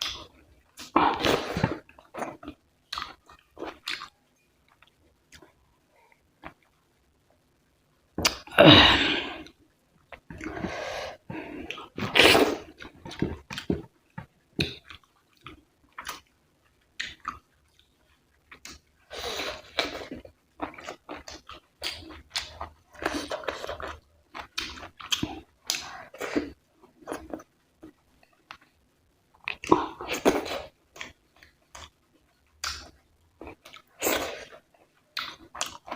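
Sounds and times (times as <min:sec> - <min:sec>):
chewing and mouth sounds: 0:19.5 - 0:28.8, 0:29.4 - 0:35.9.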